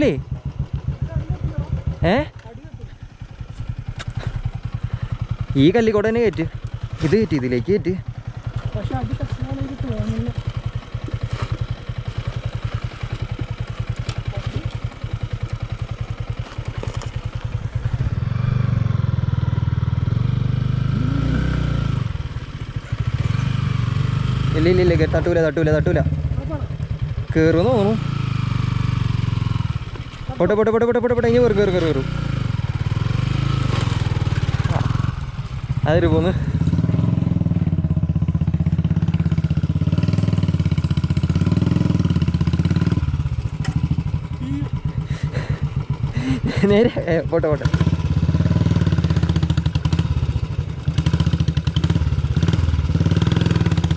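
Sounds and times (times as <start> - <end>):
motorcycle engine revving: 0.0 - 53.9.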